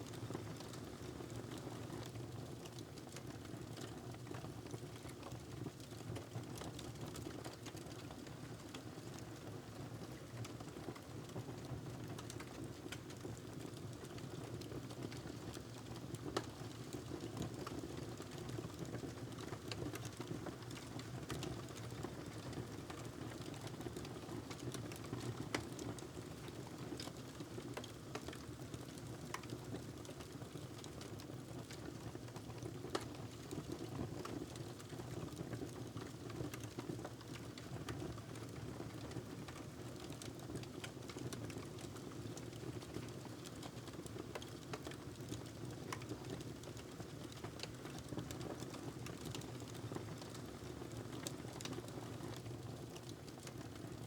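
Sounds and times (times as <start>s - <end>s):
wood fire crackling: 43.7s - 53.7s.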